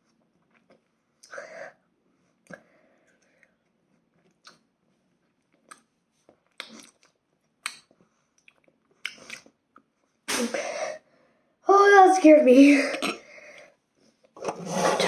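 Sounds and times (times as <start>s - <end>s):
person chewing food: 0.0s - 1.3s, 2.4s - 10.0s.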